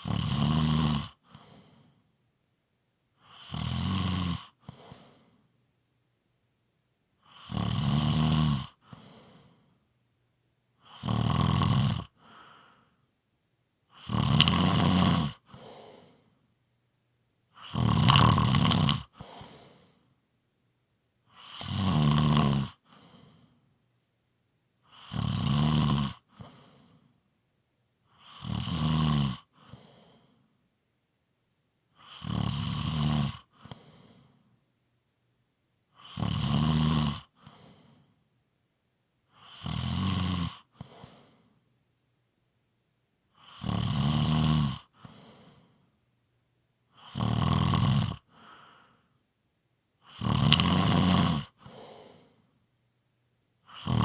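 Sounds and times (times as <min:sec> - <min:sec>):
person snoring: 0:00.0 - 0:01.9, 0:03.2 - 0:05.3, 0:07.3 - 0:09.6, 0:10.8 - 0:12.9, 0:13.9 - 0:16.2, 0:17.6 - 0:20.0, 0:21.3 - 0:23.5, 0:24.9 - 0:27.0, 0:28.1 - 0:30.3, 0:32.0 - 0:34.3, 0:36.0 - 0:38.0, 0:39.4 - 0:41.4, 0:43.4 - 0:45.7, 0:47.0 - 0:49.0, 0:50.0 - 0:52.4, 0:53.7 - 0:54.0
faint breath: 0:01.2 - 0:02.2, 0:04.6 - 0:05.6, 0:08.8 - 0:09.9, 0:12.2 - 0:13.1, 0:15.5 - 0:16.5, 0:19.2 - 0:20.2, 0:22.8 - 0:23.7, 0:26.3 - 0:27.2, 0:29.5 - 0:30.6, 0:33.5 - 0:34.6, 0:37.4 - 0:38.2, 0:40.7 - 0:41.6, 0:44.9 - 0:46.0, 0:48.3 - 0:49.2, 0:51.6 - 0:52.6.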